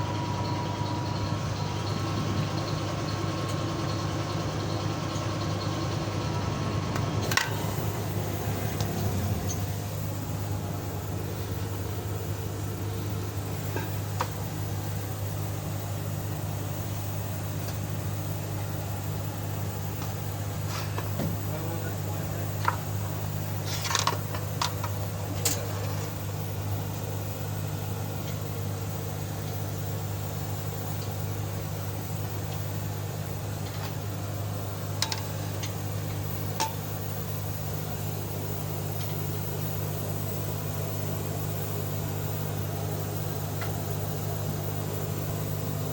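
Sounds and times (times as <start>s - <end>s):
machine humming: 0.0s - 20.4s.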